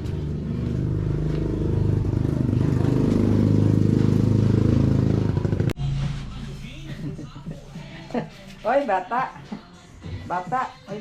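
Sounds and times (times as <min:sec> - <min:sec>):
vehicle engine running: 0:00.0 - 0:06.5.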